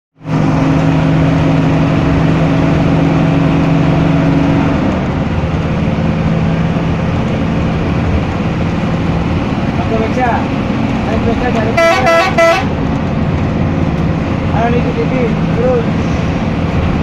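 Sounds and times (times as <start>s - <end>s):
bus engine humming: 0.2s - 17.0s.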